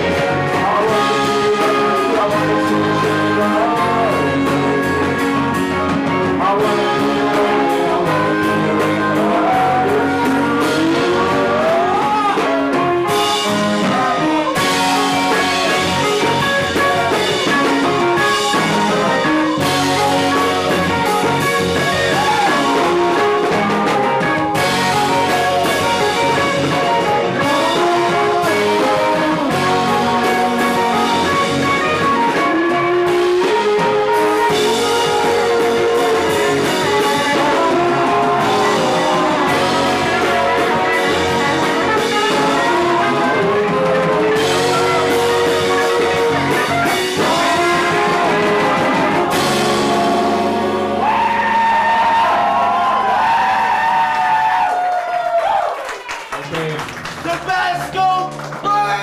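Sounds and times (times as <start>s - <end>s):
sliding melody line: 0.0s - 52.4s
live band playing: 0.0s - 59.0s.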